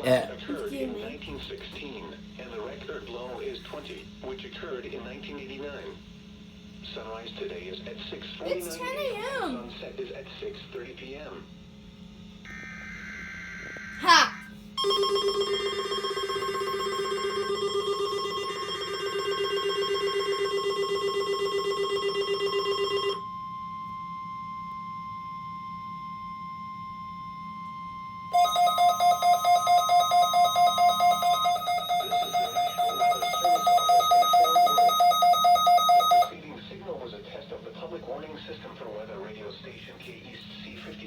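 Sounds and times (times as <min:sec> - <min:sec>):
steady warning tone: 0:00.0 - 0:01.2, 0:08.5 - 0:09.7, 0:12.4 - 0:36.4
fast-pulsing buzzy alarm beep: 0:12.4 - 0:36.3
high-pitched pulsing alarm beep: 0:12.5 - 0:36.3.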